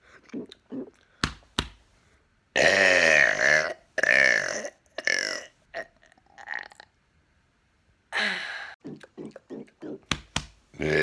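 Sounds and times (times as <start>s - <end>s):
faint mouth sounds: 0.0s - 1.2s, 8.8s - 10.2s
man burping loudly: 2.6s - 5.9s, 10.8s - 11.0s.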